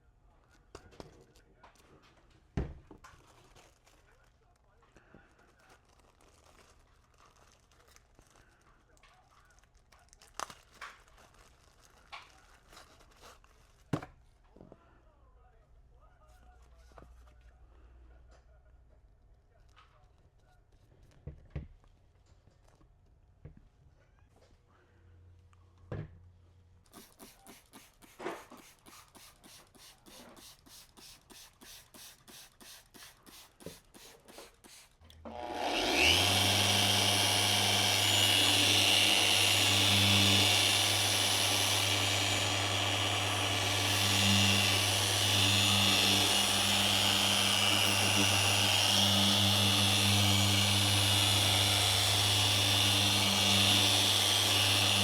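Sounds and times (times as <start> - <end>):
power tool humming and whining: 35.2 - 55.0.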